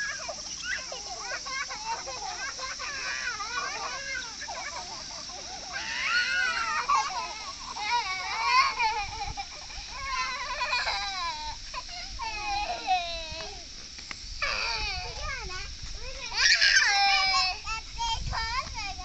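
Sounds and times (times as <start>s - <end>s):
young child crying: 5.6s - 13.7s, 14.4s - 15.4s, 16.2s - 17.7s.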